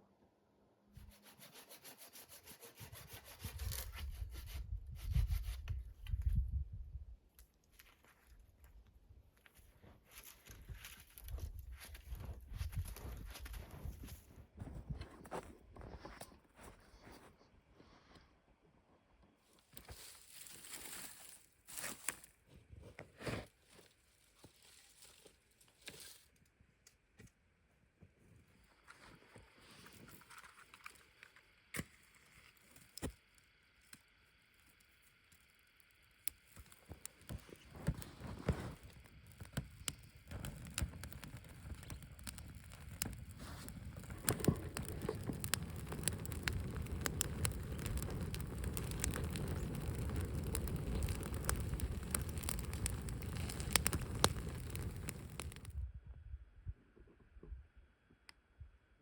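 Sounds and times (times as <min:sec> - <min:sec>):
hand saw cutting wood: 0:01.2 - 0:04.6
rustling and crinkling: 0:07.6 - 0:17.4, 0:19.5 - 0:26.4, 0:36.4 - 0:55.7.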